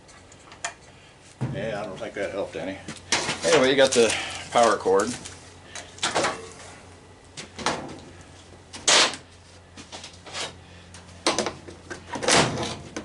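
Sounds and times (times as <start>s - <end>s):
steady low hum: 0.0s - 13.0s
scrapes and knocks of handling: 1.4s - 6.8s.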